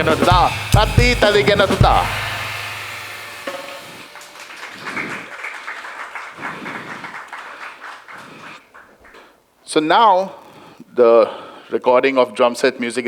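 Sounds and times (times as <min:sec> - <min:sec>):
drum kit ringing out: 0:00.0 - 0:06.0
audience applause: 0:03.3 - 0:09.4.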